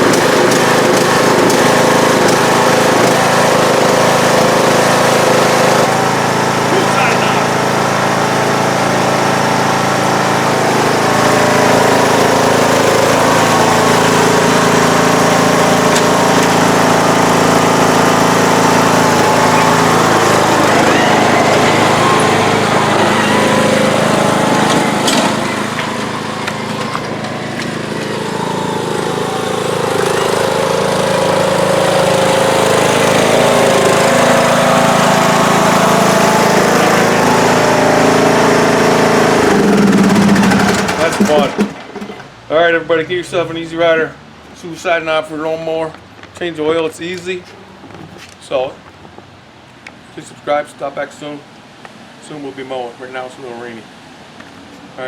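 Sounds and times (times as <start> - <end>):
lawn tractor engine running: 0.0 - 42.5.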